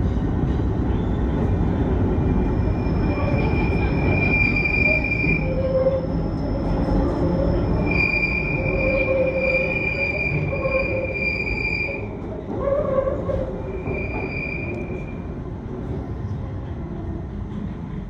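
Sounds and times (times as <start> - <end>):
train rumble: 0.0 - 18.0
train wheels squealing: 2.3 - 15.3.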